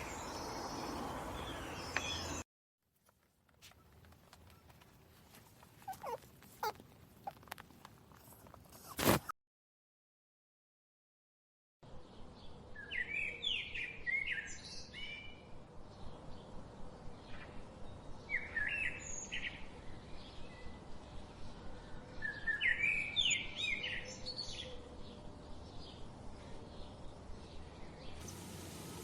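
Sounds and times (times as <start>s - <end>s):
small bird chirping song: 0.0s - 2.4s, 11.9s - 28.5s.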